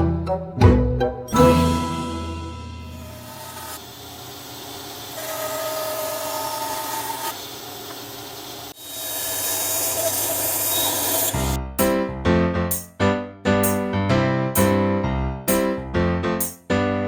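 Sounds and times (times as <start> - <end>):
music: 0.0 - 3.5, 11.6 - 17.0
power tool cutting wood: 3.2 - 3.9, 5.0 - 11.6.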